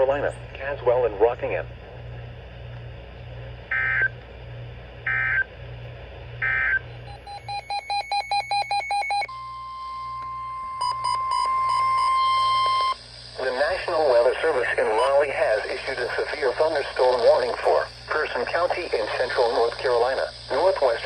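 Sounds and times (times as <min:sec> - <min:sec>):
steady alarm tone: 0:03.7 - 0:04.1, 0:06.4 - 0:21.0
rapid electronic beeps: 0:06.4 - 0:13.0
short beeps: 0:06.4 - 0:13.0.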